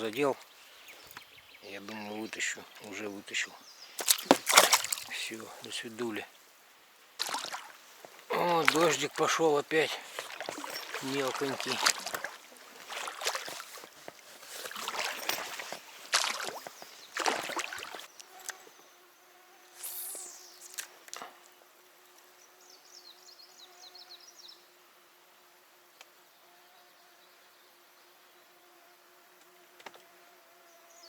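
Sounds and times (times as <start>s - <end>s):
flying insect buzzing: 15.8s - 31.0s
high chirps: 19.8s - 20.8s.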